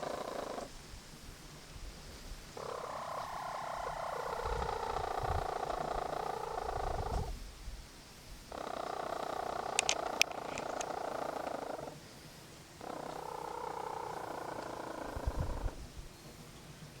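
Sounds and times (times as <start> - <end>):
hen purring calls: 0.0 - 0.7, 2.6 - 7.4, 8.5 - 12.0, 12.8 - 16.0
sharp clicks: 9.7 - 11.0.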